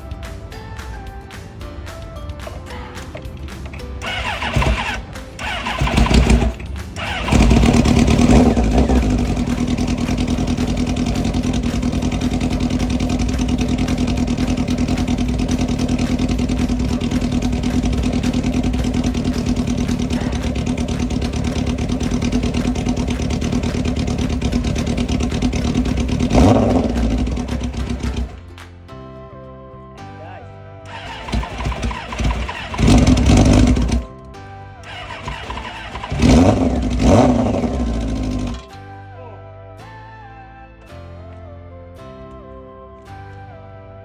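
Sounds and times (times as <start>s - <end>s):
motorcycle engine running: 3.8s - 28.4s, 30.9s - 34.1s, 34.8s - 38.7s.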